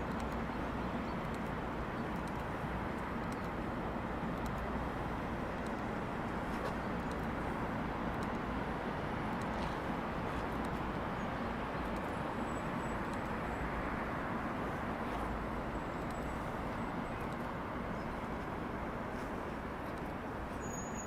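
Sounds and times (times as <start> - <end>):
faint ticks: 0.1 - 0.5.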